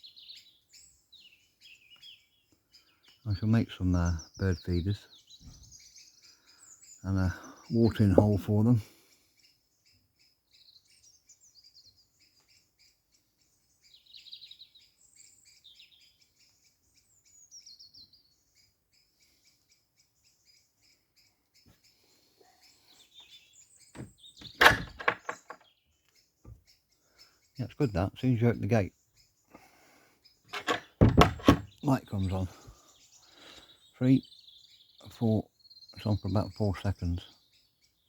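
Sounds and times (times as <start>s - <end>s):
small birds chirping and singing: 0.0s - 38.0s
garden gate creaking: 7.8s - 8.6s, 24.0s - 25.7s, 30.5s - 32.0s.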